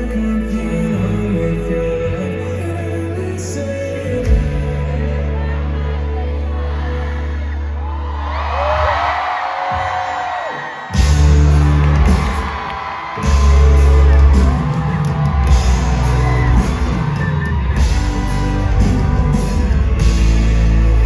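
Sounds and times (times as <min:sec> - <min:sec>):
crowd whooping: 0:05.8 - 0:21.0
live rock band playing: 0:11.0 - 0:21.0.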